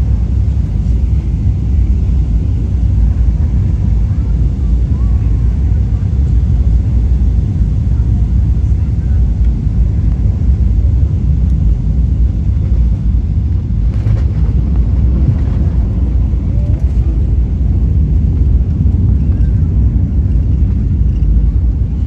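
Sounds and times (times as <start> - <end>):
airliner cabin rumble: 0.0 - 22.0.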